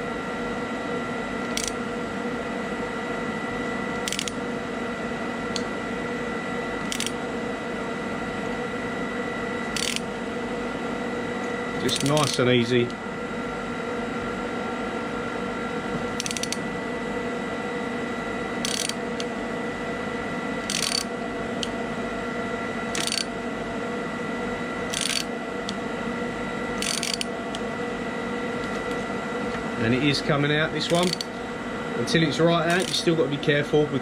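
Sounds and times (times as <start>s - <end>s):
steady hum: 0.0s - 34.0s
wrench clicking: 1.5s - 1.8s, 4.0s - 4.4s, 6.8s - 7.2s, 9.8s - 10.0s, 11.9s - 12.4s, 16.2s - 16.6s, 18.6s - 19.3s, 20.7s - 21.1s, 23.0s - 23.3s, 24.9s - 25.3s, 26.8s - 27.3s, 30.9s - 31.3s, 32.7s - 33.0s.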